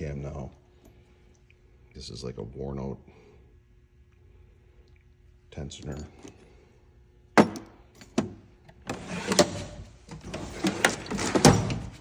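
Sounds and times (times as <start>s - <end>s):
metal tools rattling: 5.7s - 6.4s
steel drawer moving: 8.8s - 12.0s.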